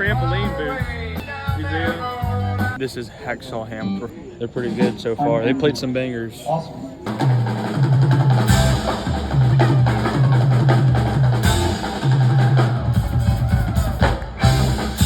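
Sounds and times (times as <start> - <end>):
drum kit beat: 0.0 - 2.8, 7.1 - 15.0
live band playing: 0.0 - 2.8, 7.0 - 15.0
repeating bass line: 8.4 - 15.0.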